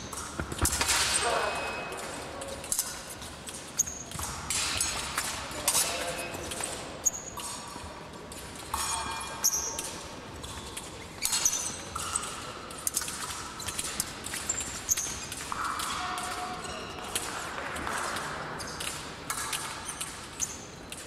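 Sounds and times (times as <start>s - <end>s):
footwork thumps and stamps: 0.2s - 1.0s.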